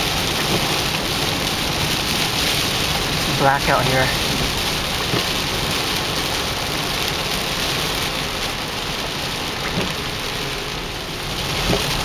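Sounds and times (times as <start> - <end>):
heavy rain hiss: 0.0 - 12.0.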